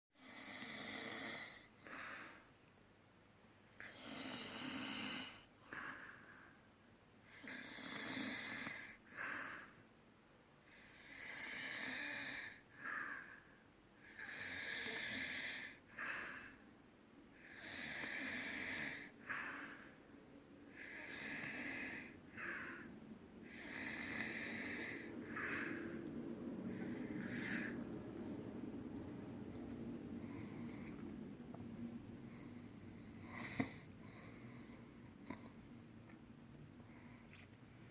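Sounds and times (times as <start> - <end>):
person snoring: 0.2 - 2.4, 3.8 - 6.2, 7.3 - 9.7, 10.8 - 13.3, 14.1 - 16.5, 17.4 - 19.9, 20.7 - 26.0, 26.7 - 27.9.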